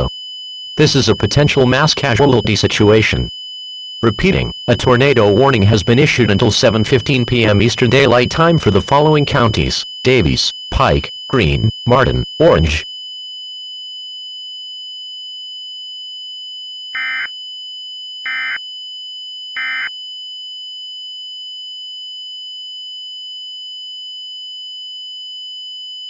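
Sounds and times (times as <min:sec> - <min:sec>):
steady high-pitched tone: 0:04.0 - 0:12.8.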